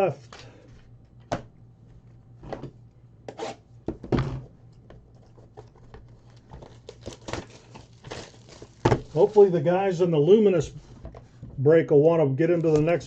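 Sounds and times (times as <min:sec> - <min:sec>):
packaging ripping and crinkling: 0:05.6 - 0:09.7.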